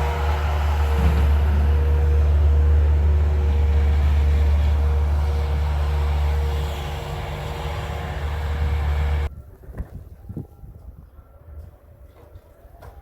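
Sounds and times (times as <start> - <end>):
vehicle engine rumbling: 0.0 - 9.3.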